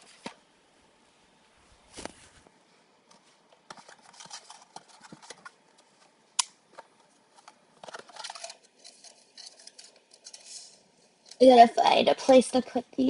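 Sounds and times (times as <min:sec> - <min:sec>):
packaging rustling: 0:03.7 - 0:05.8.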